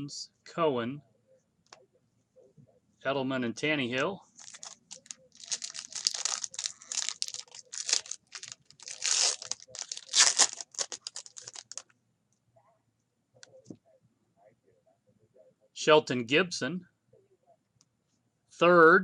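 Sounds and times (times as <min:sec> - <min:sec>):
wrapper tearing and crinkling: 0:04.4 - 0:11.8.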